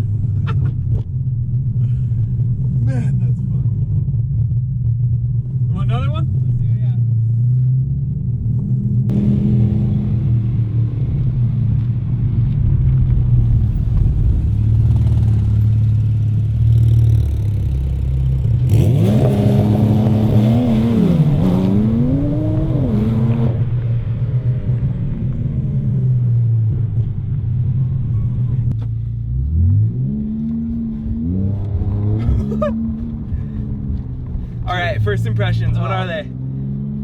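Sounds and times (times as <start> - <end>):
sports car engine revving: 14.0 - 24.1, 28.7 - 37.0.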